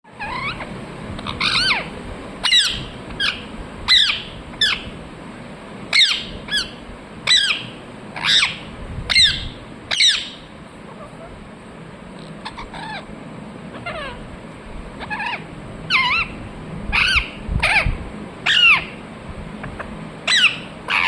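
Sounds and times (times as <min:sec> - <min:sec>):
parakeet shrill calls: 0:00.2 - 0:04.9, 0:05.9 - 0:10.5, 0:12.2 - 0:13.1, 0:13.7 - 0:14.2, 0:15.0 - 0:19.0, 0:20.3 - 0:21.0.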